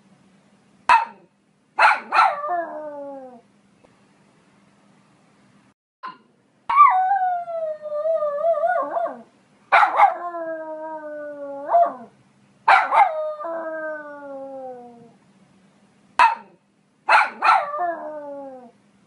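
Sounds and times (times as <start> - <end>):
dog barking: 0.9 - 2.4, 9.0 - 10.2, 12.7 - 13.2, 16.2 - 17.8
dog howling: 6.7 - 12.1, 12.7 - 15.1, 17.3 - 18.7.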